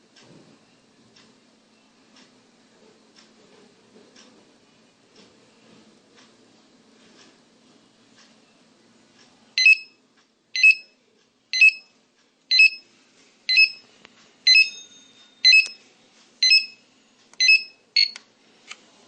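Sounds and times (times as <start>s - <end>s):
two-tone alarm beep: 9.6s - 10.0s, 10.6s - 11.0s, 11.6s - 11.9s, 12.5s - 12.8s, 13.5s - 13.8s, 14.5s - 15.8s, 16.4s - 16.8s, 17.4s - 18.2s.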